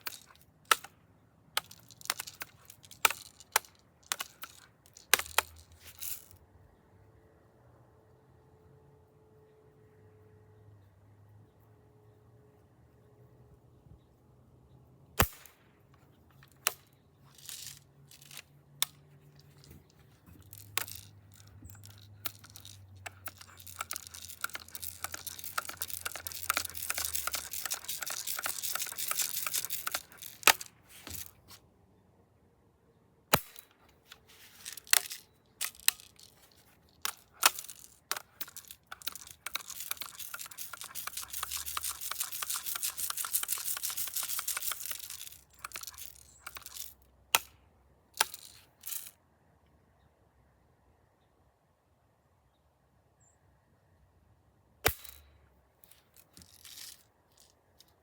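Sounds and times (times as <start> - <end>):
rustling and crinkling: 1.6 - 6.4, 15.9 - 31.7, 33.5 - 47.1, 55.8 - 58.0.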